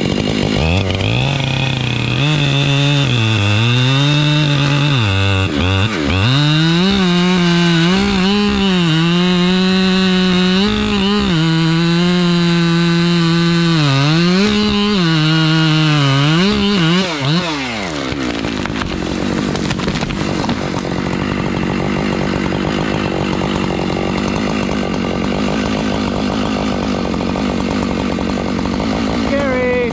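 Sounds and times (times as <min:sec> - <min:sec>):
chainsaw cutting wood: 0:00.0 - 0:29.9.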